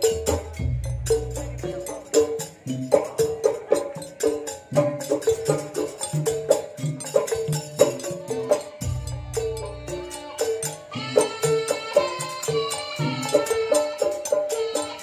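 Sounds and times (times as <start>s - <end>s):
traditional percussion music: 0.0s - 15.0s
long held high tone: 8.1s - 15.0s.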